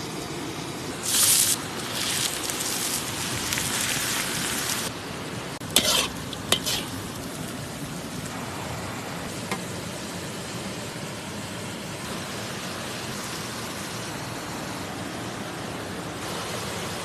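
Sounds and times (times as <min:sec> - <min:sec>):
food sizzling in a pan: 0:01.0 - 0:04.9, 0:05.6 - 0:08.3.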